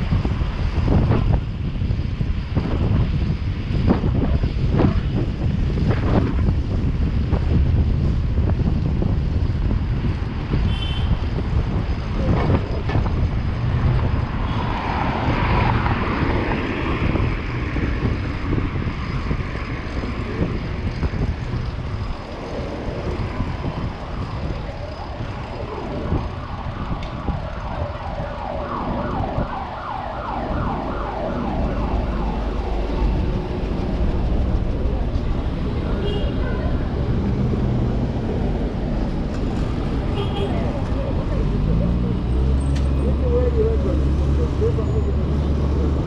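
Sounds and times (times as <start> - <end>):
street traffic rumbling: 0.0 - 46.0
wind on microphone: 0.0 - 46.0
emergency siren wailing: 14.0 - 22.0, 22.6 - 35.9, 40.5 - 46.0.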